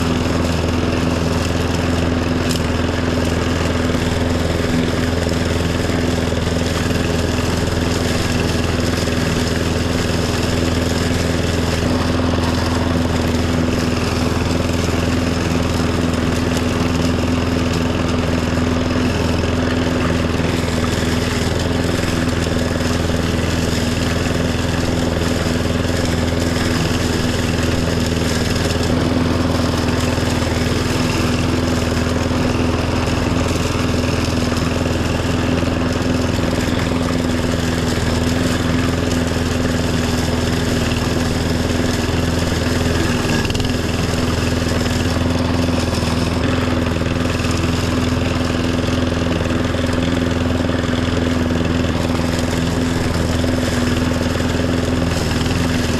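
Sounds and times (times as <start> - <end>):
riding mower engine running: 0.0 - 55.9.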